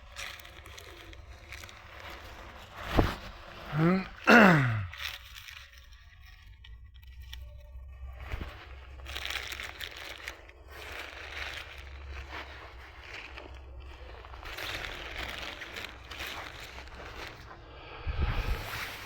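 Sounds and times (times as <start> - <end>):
plastic snack bag crinkling: 0.0 - 19.0.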